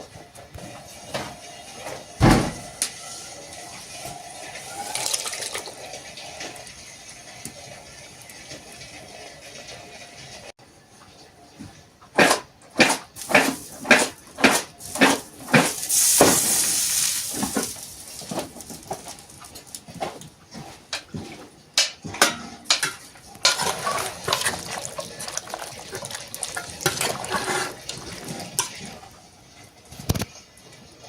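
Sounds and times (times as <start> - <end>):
water splashing and pouring: 3.5 - 9.2, 13.2 - 19.6, 23.4 - 29.2.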